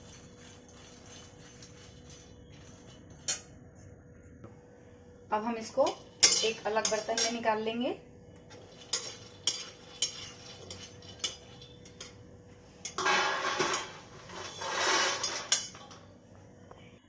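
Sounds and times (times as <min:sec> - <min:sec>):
metal spatula clinking on iron pan: 0:05.9 - 0:07.4, 0:08.7 - 0:12.2
scraping and rattling: 0:08.5 - 0:12.2, 0:12.8 - 0:16.1.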